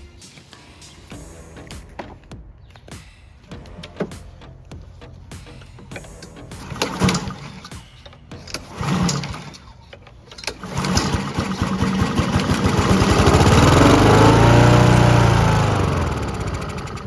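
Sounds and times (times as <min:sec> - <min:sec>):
lawn mower pull-start: 0:03.5 - 0:04.6, 0:05.6 - 0:17.0
lawn mower engine running: 0:03.6 - 0:17.0.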